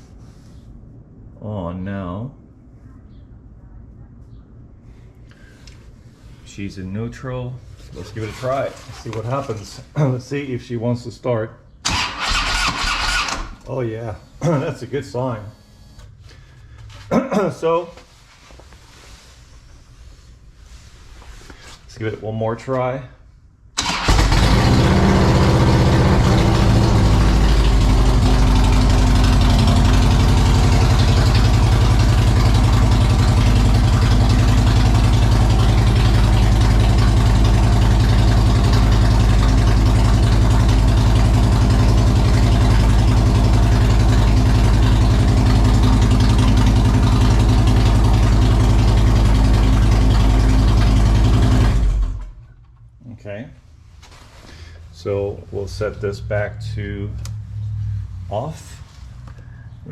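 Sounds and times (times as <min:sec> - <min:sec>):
motorcycle engine idling: 0:23.9 - 0:51.8.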